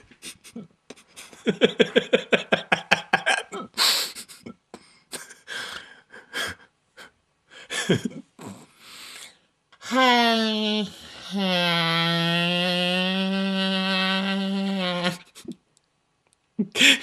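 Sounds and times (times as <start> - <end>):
person laughing: 0.0 - 6.6, 7.7 - 8.3, 14.7 - 15.6, 16.6 - 17.0.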